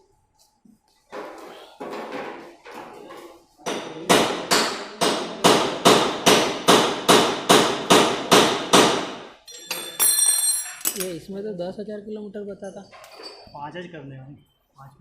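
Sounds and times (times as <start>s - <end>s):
hammer blows ringing: 3.6s - 10.7s.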